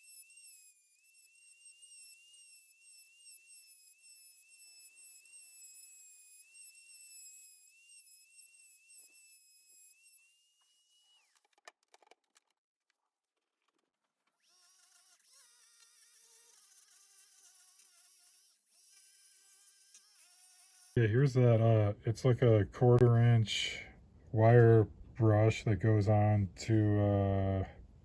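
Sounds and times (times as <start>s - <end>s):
die grinder whining: 0.0s - 11.6s.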